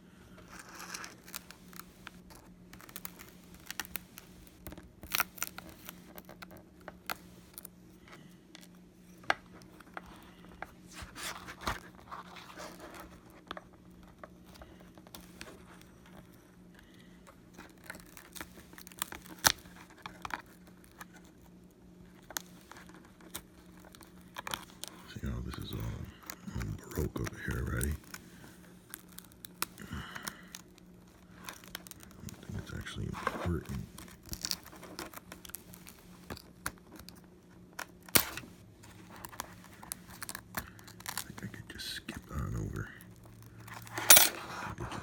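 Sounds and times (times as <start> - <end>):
faint steady hum: 0.0 - 45.0
glass crackling and snapping: 0.6 - 7.7, 17.7 - 20.6, 28.9 - 32.3, 34.0 - 38.4, 39.2 - 41.3.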